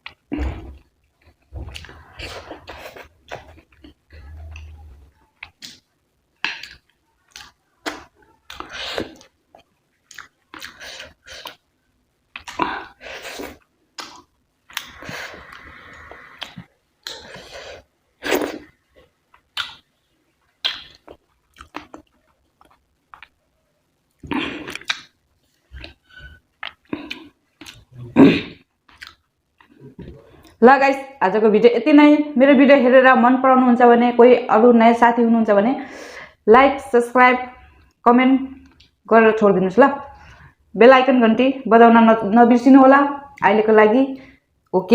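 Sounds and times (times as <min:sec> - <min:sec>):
person chewing food: 0:00.0 - 0:05.8, 0:06.4 - 0:11.6, 0:12.3 - 0:23.4, 0:24.1 - 0:28.0, 0:28.8 - 0:30.6.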